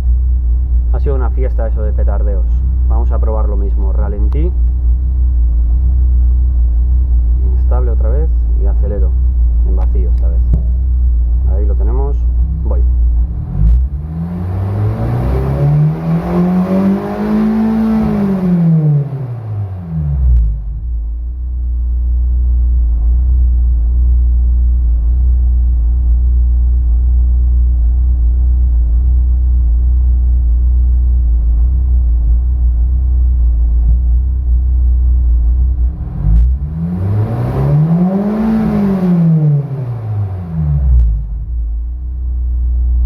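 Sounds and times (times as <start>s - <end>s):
car engine idling: 0.0s - 43.0s
engine revving: 12.6s - 20.8s, 35.7s - 41.5s
click: 20.3s - 20.6s, 41.0s - 41.2s.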